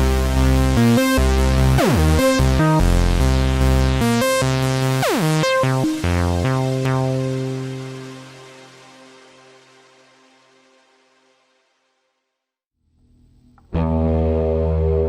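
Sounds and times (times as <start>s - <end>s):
synthesizer bass line: 0.0s - 9.5s, 13.2s - 15.0s.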